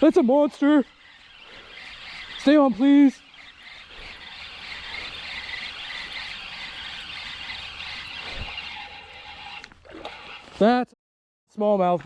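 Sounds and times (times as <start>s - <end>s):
fishing reel buzzing: 0.1s - 10.6s.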